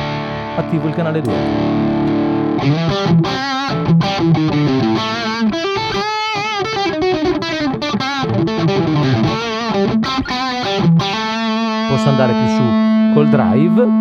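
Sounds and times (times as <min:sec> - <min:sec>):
distorted electric guitar: 0:00.0 - 0:13.3.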